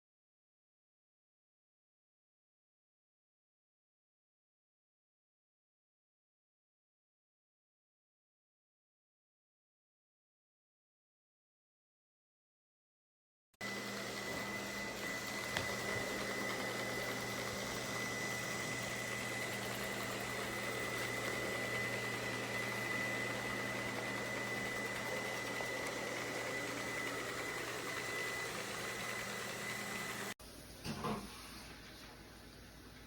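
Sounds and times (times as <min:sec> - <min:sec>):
robot vacuum cleaner whine: 0:13.6 - 0:30.4.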